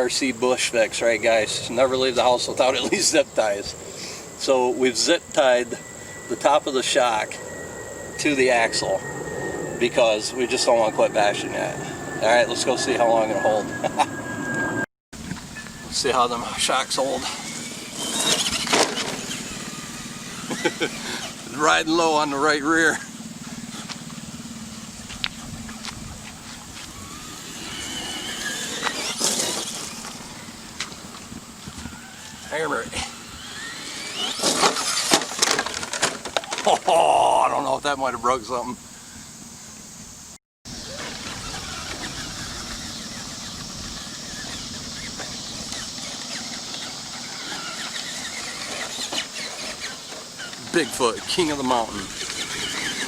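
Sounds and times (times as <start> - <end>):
electric motor and gear whine: 0.0 - 53.0
tyres clicking over rough ground: 15.2 - 38.8, 40.7 - 53.0
scuffing noise: 25.0 - 27.1.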